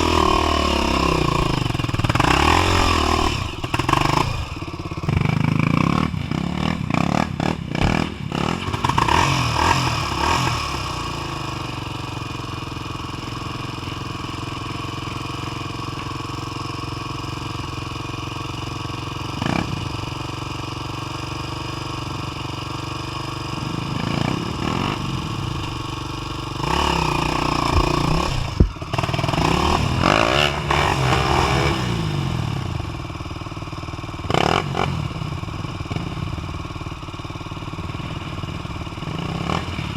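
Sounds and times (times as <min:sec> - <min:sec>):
dirt bike engine revving: 0:00.0 - 0:12.0, 0:19.2 - 0:20.5, 0:21.3 - 0:33.2, 0:34.2 - 0:36.9, 0:37.9 - 0:39.9.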